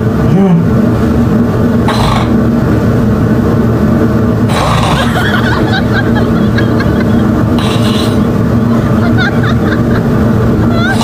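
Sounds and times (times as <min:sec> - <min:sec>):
steady low rumble: 0:00.0 - 0:11.0
man imitating snoring: 0:01.9 - 0:02.4, 0:04.5 - 0:05.2, 0:07.5 - 0:08.4.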